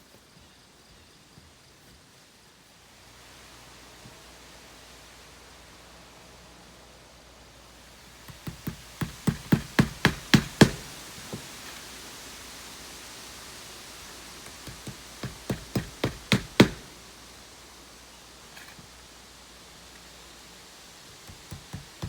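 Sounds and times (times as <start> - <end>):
hammer striking nails: 8.3 - 10.9, 14.4 - 16.9, 21.2 - 22.0.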